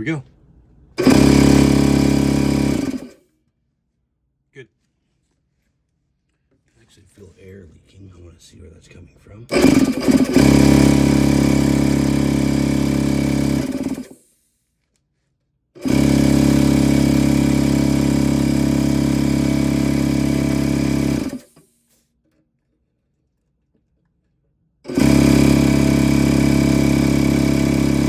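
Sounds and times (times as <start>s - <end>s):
air compressor running: 1.0s - 3.2s, 9.5s - 14.5s, 15.8s - 22.0s, 24.8s - 28.0s.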